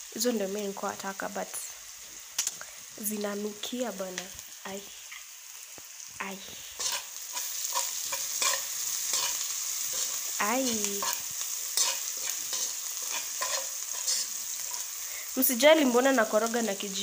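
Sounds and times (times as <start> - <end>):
onions sizzling in a frying pan: 0.0 - 17.0
spoon scraping a pan: 6.8 - 15.0.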